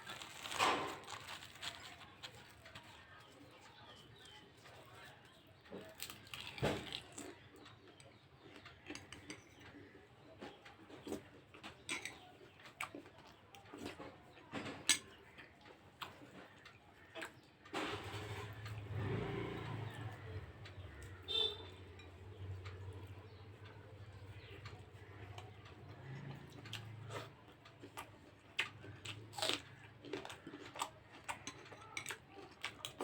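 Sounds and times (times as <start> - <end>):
rustling: 0.0 - 3.0
chewing: 0.0 - 33.0.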